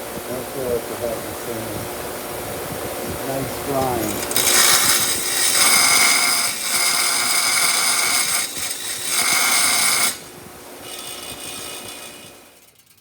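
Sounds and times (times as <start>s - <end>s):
power tool grinding steel: 3.4s - 13.0s.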